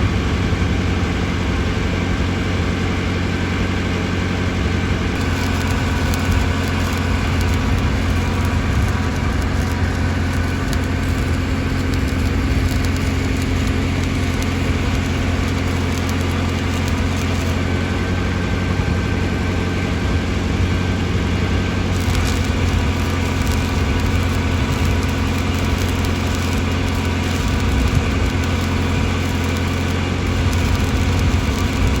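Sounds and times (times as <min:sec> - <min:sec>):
welding machine low hum: 0:05.0 - 0:19.8, 0:21.4 - 0:32.0
welding arc crackling hiss: 0:05.1 - 0:18.3, 0:21.8 - 0:32.0.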